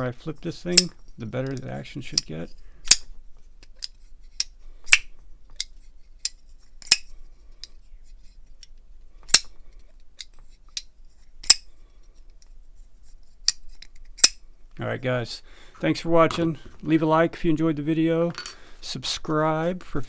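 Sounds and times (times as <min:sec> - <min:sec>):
blade snapping with metallic clicks: 0:02.1 - 0:07.1, 0:10.2 - 0:11.7, 0:14.2 - 0:14.4
pocket knife flipping open and shut: 0:02.1 - 0:07.8, 0:08.6 - 0:09.5, 0:10.2 - 0:11.7, 0:13.4 - 0:14.4.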